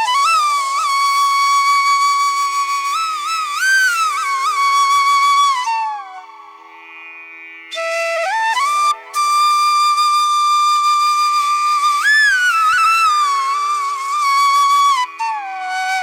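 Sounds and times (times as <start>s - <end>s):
flute-like melody: 0.0s - 6.5s, 7.7s - 16.0s.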